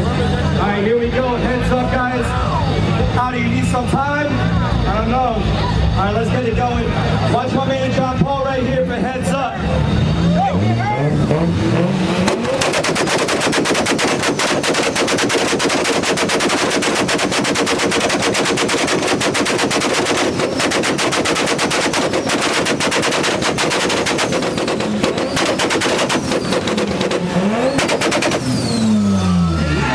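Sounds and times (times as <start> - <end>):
car engine on rev limiter: 0.0 - 29.9
exhaust popping bangs: 10.7 - 29.2.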